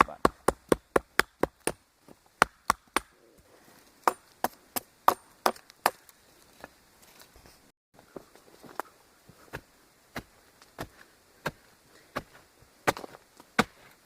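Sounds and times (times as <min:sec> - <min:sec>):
tomahawk chopping wood: 0:00.0 - 0:01.8, 0:02.4 - 0:03.2, 0:04.0 - 0:06.1, 0:12.9 - 0:13.9.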